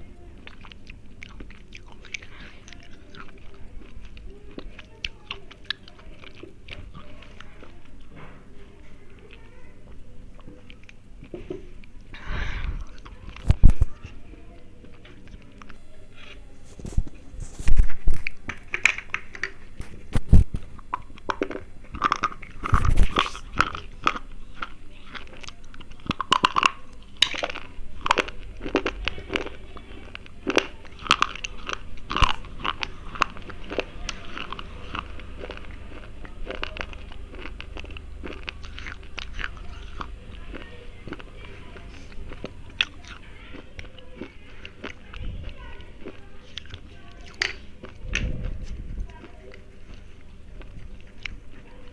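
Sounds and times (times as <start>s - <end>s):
crunching of chewed slate pencils: 0.0s - 51.9s.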